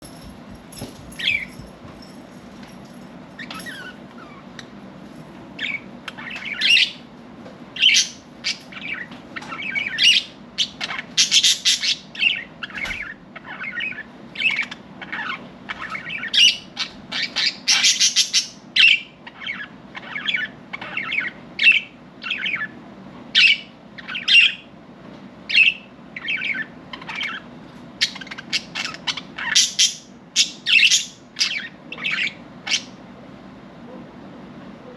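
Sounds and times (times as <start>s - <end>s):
budgerigars chirping: 3.4s - 4.7s, 5.6s - 7.0s, 7.8s - 22.8s, 23.4s - 24.7s, 25.5s - 33.0s.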